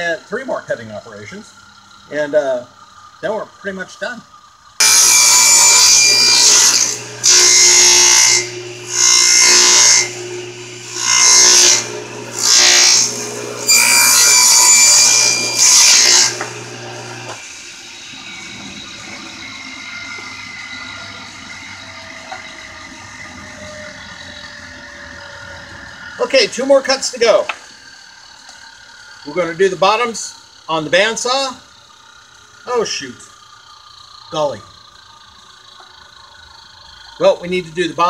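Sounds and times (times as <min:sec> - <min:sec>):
saw cutting wood: 0:04.8 - 0:36.6
low hum: 0:16.3 - 0:35.7.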